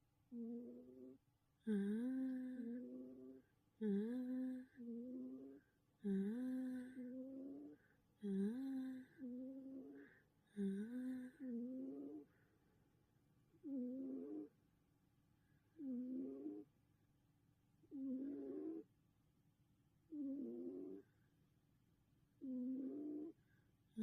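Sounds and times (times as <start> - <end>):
cat snoring: 0.3 - 12.4, 13.6 - 14.5, 15.7 - 16.7, 17.8 - 18.9, 20.1 - 21.2, 22.4 - 24.0.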